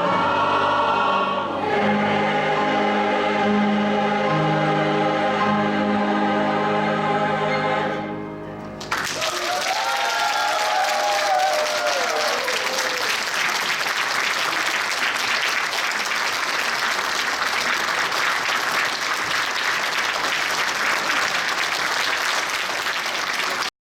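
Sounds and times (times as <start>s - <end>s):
women's choir singing: 0.0s - 8.3s
audience applause: 8.8s - 23.7s.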